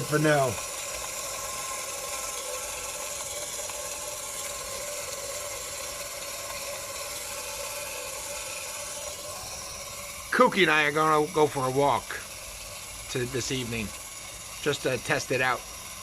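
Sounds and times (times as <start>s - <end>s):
steady tones: 0.0s - 16.0s
toy motor whirring: 0.0s - 16.0s.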